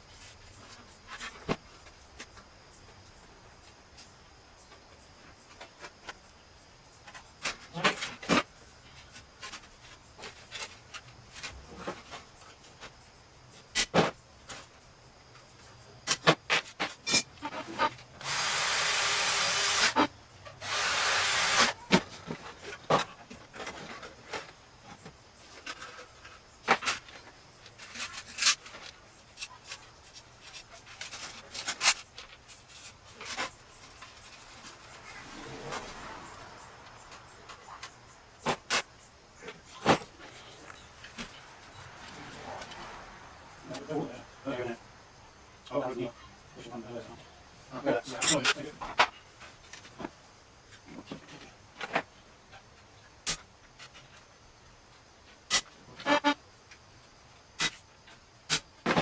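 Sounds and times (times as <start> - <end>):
hissing bursts: 18.2 - 21.9.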